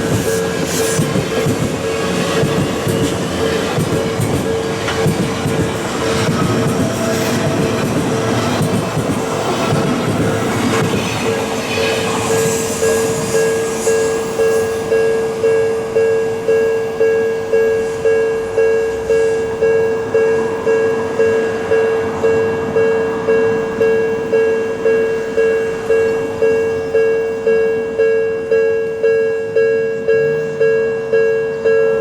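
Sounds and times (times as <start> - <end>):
train rumble: 0.0 - 32.0
level crossing bell ringing: 12.3 - 32.0.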